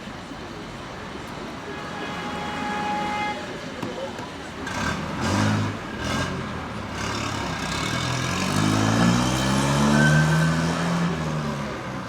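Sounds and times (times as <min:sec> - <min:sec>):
street traffic: 0:00.0 - 0:12.0
vehicle engine accelerating: 0:04.7 - 0:11.8.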